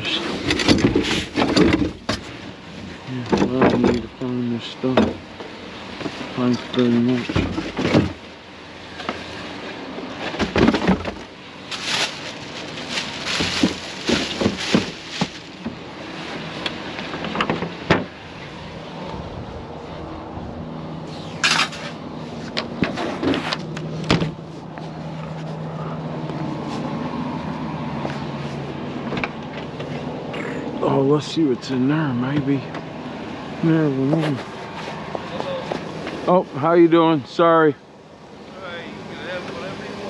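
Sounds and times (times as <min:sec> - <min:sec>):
vehicle engine running: 0:00.0 - 0:40.0
sharp knocks and clatters: 0:00.4 - 0:02.4, 0:03.2 - 0:04.1, 0:07.2 - 0:08.2, 0:10.2 - 0:11.3, 0:13.0 - 0:15.8, 0:17.1 - 0:18.2.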